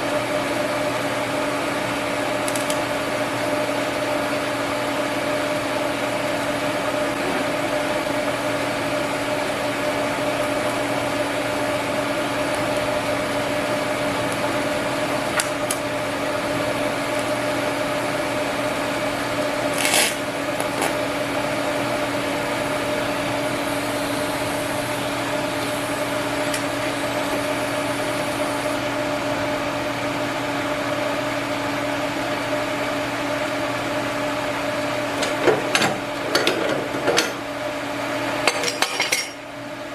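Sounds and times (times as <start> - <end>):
welder humming with hiss: 6.6 - 30.2.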